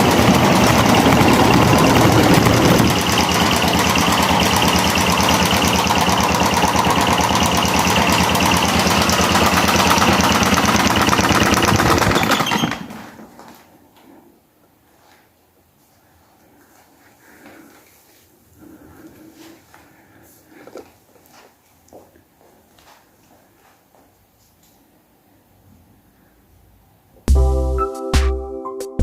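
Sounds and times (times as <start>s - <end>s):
electric fan clattering: 0.0s - 13.4s.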